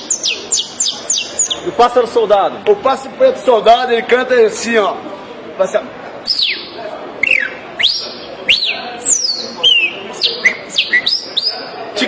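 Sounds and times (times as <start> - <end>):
man whistling birdsong imitation: 0.1 - 1.6, 6.3 - 6.6, 7.2 - 11.6.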